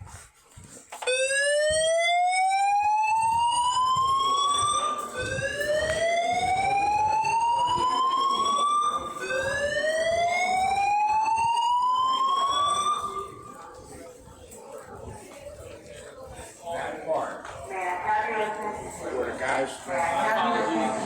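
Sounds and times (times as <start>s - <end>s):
fire alarm whoop siren: 1.0s - 13.6s.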